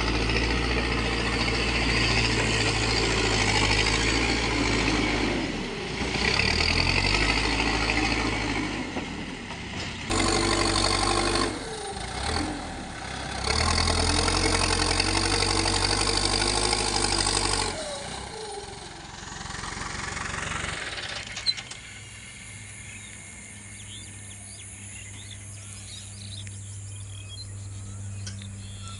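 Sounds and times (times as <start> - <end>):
diesel engine revving: 0.0 - 28.9
low steady engine hum: 0.0 - 28.9
faint insect chirps: 21.4 - 28.9.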